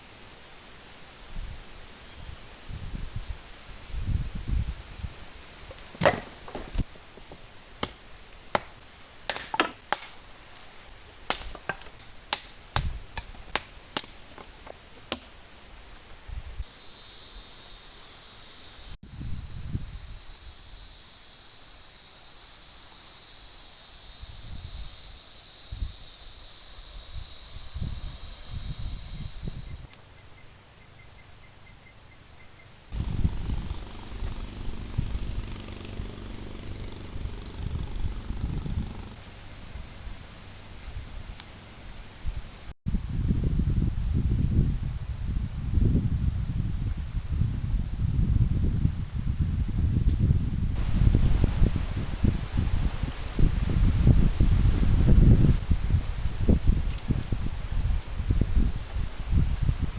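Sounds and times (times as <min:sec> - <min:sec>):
high insect buzz: 0:16.6 - 0:30.0, 0:32.9 - 0:39.2.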